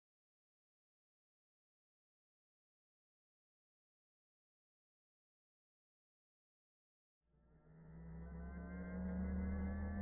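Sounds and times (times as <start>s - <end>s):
low synthesized drone: 7.3s - 10.0s.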